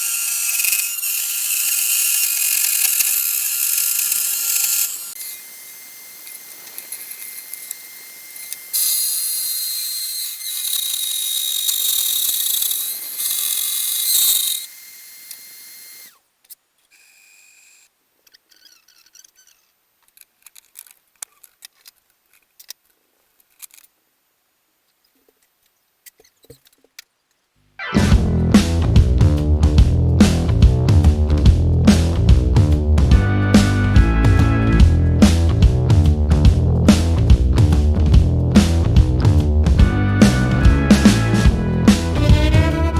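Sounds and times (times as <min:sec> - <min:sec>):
cutter milling material: 0:00.0 - 0:16.1
router spindle whining: 0:00.0 - 0:16.2.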